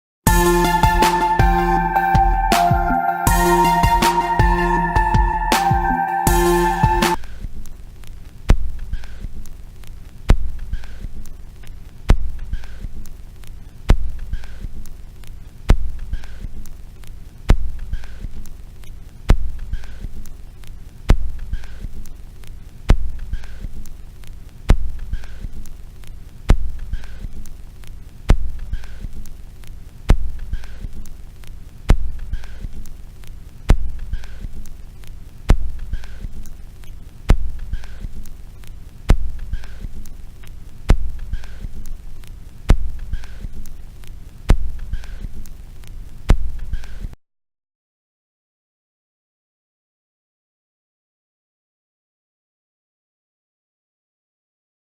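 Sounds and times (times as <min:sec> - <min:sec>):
low throbbing pulse: 0:00.3 - 0:07.2.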